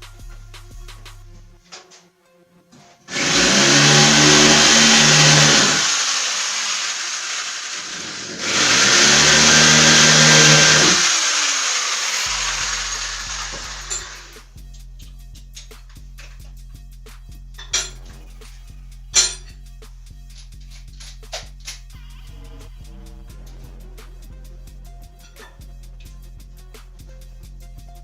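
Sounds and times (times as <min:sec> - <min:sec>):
electric power tool: 0:03.1 - 0:14.4.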